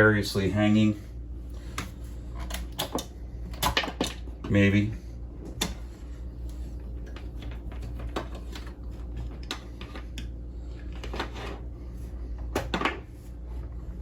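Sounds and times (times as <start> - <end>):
steady low hum: 0.0 - 14.0
gear and cables handled on desk: 5.4 - 13.4.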